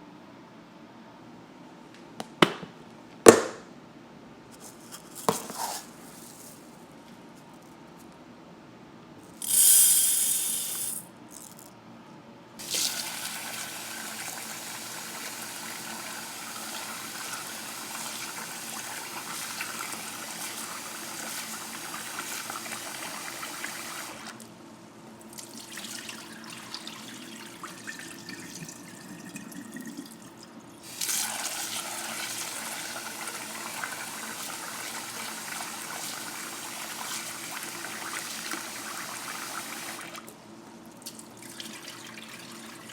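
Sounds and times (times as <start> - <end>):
tap water running into sink: 12.6 - 24.4, 30.9 - 40.2.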